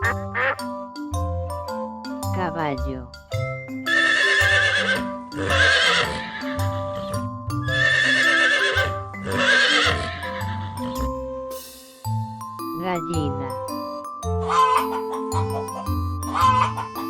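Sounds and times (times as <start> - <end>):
light background melody: 0.0 - 17.0
horse whinnying: 3.8 - 11.2.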